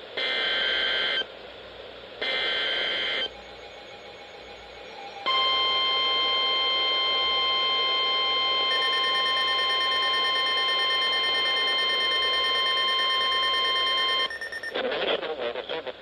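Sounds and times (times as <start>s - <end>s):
steady alarm tone: 2.4s - 14.7s.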